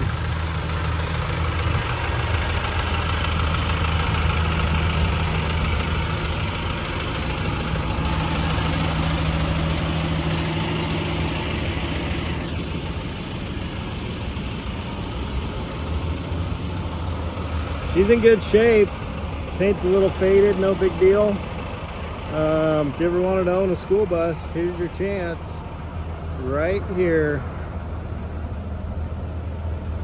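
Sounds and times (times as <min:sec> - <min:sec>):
bus diesel engine idling: 0:00.0 - 0:30.0.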